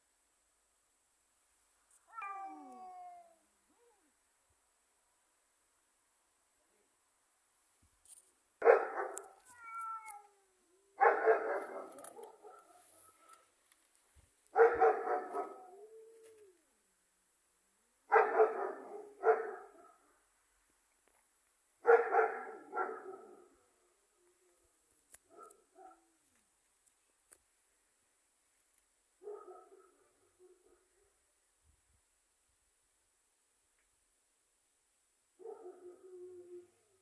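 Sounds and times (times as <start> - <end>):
cat whining: 2.1 - 3.4
cat yowling: 2.1 - 4.0, 9.4 - 11.0.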